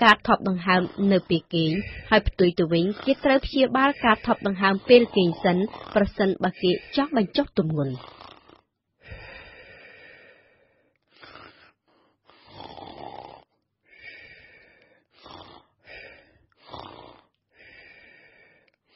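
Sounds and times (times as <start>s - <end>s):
person snoring: 0.5s - 9.5s, 11.2s - 14.4s, 15.2s - 18.1s.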